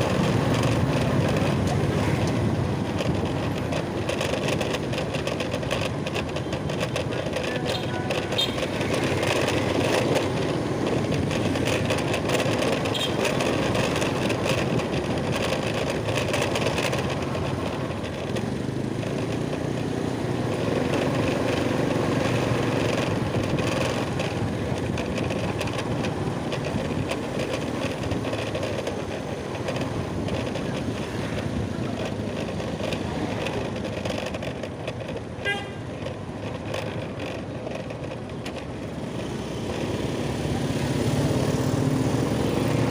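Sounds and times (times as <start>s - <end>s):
road traffic: 0.0s - 42.9s
short horn beep: 35.4s - 35.8s.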